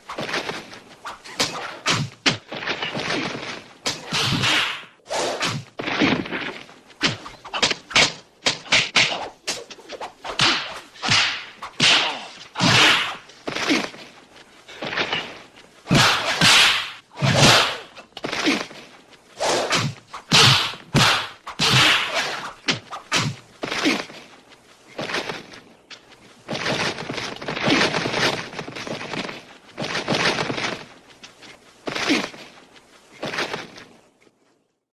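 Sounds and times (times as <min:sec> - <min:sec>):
punch and kick impacts: 0:01.4 - 0:09.6, 0:10.4 - 0:14.0, 0:15.9 - 0:18.8, 0:19.5 - 0:24.1
swishes: 0:03.2 - 0:05.7, 0:06.9 - 0:25.5
swishing whooshes: 0:04.0 - 0:05.7, 0:19.4 - 0:24.2.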